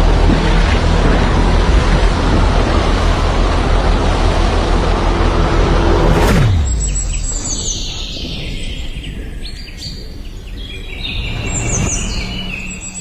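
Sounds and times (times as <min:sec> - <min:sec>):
low outdoor rumble: 0:00.0 - 0:13.0
motor whine dropping in pitch: 0:00.4 - 0:09.6
birds chirping: 0:01.6 - 0:13.0.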